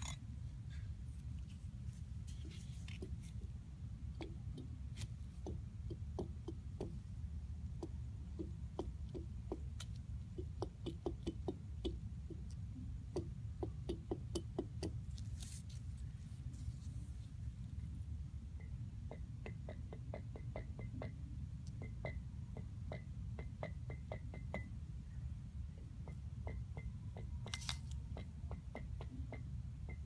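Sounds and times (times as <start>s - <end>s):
steady low hum: 0.0s - 30.0s.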